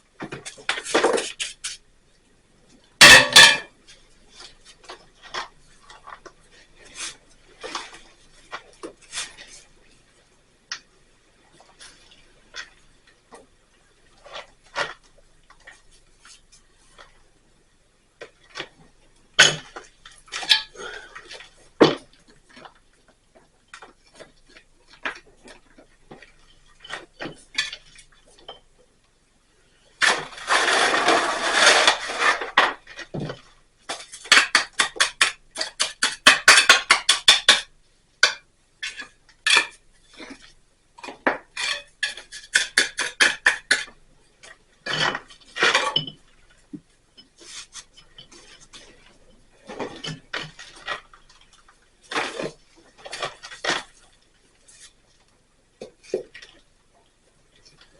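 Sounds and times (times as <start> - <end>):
hand tools clinking and scraping: 3.0 - 8.0, 30.0 - 43.9, 44.8 - 46.3, 47.2 - 54.1.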